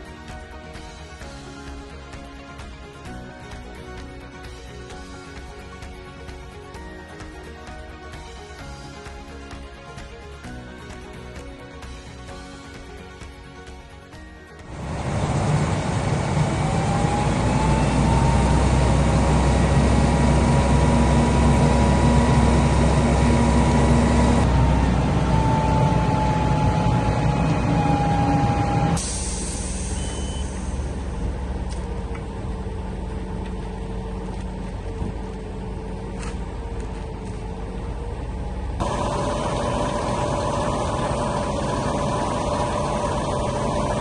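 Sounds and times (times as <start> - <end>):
heavy truck engine running: 14.1 - 44.0.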